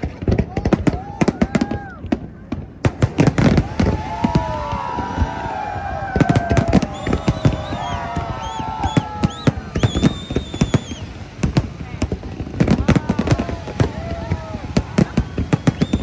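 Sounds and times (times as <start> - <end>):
fireworks bangs and crackles: 0.0 - 16.0
firework whistles: 3.2 - 11.3, 13.0 - 16.0.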